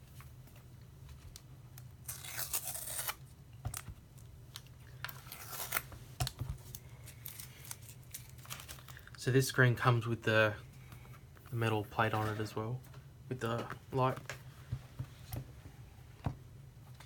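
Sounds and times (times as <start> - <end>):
low steady hum: 0.0 - 17.0
tape tearing and foam rustling: 2.0 - 3.8, 5.1 - 9.1.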